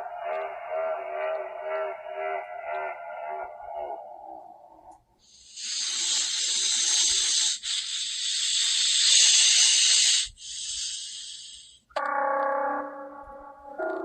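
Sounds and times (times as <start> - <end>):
droning tone with overtones: 0.0 - 5.2, 11.9 - 14.0
loud creature hiss: 5.4 - 11.8.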